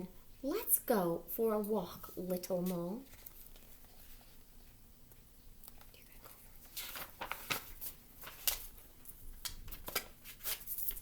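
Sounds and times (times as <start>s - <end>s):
book pages being turned: 2.1s - 4.4s, 5.7s - 11.0s.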